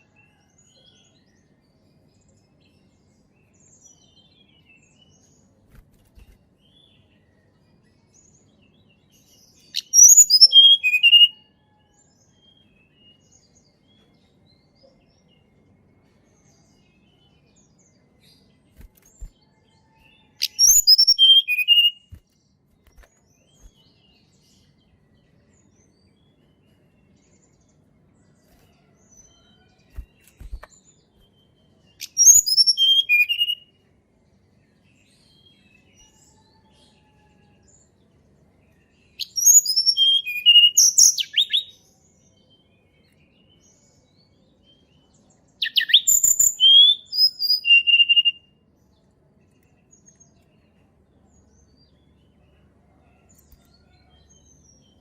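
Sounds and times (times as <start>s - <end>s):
songbird chirping and whistling: 9.6s - 11.5s, 18.8s - 22.2s, 32.0s - 33.7s, 39.0s - 41.8s, 45.6s - 48.5s.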